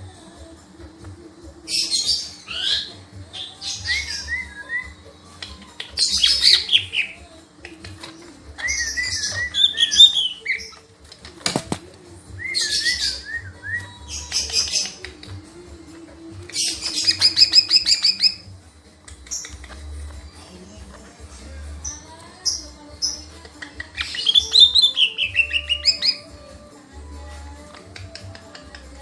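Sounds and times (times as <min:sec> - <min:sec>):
bird singing trills and whistles: 0:06.0 - 0:07.2, 0:08.6 - 0:10.8, 0:16.5 - 0:18.4, 0:24.0 - 0:26.3.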